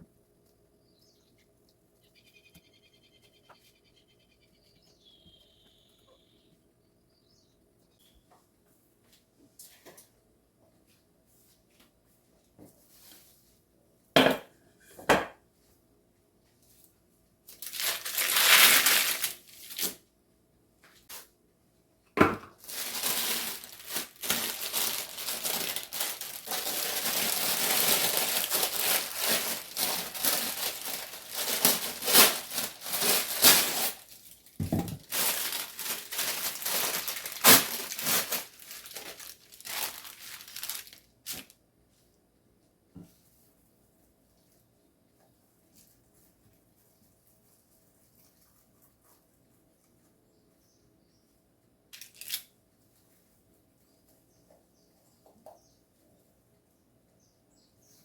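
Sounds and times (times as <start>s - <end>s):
crinkling and rustling by hand: 15.5s - 20.1s, 22.2s - 50.7s, 51.3s - 57.2s.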